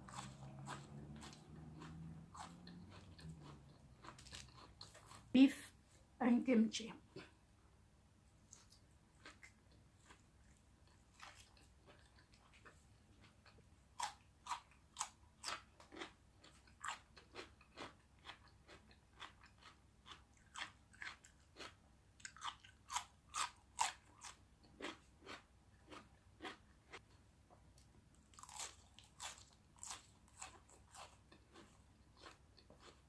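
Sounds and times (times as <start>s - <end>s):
crunchy chewing: 0.0s - 5.3s, 8.5s - 27.2s, 28.1s - 33.0s.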